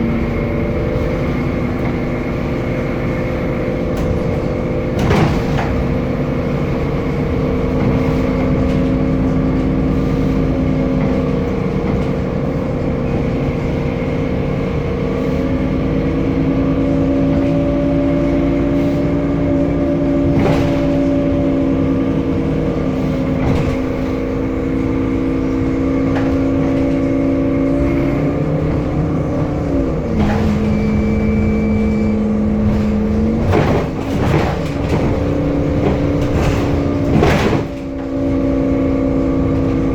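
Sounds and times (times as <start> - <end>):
bus whining drive tones: 0.0 - 39.9
knocks and rattles: 3.9 - 9.8, 28.4 - 39.9.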